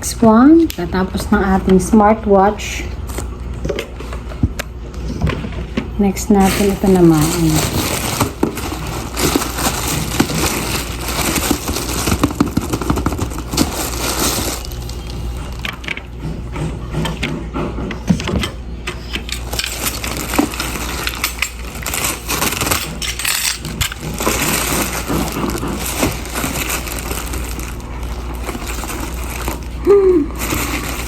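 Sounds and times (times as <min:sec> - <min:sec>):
packaging crinkling and rustling: 0:06.3 - 0:16.0, 0:19.0 - 0:31.0.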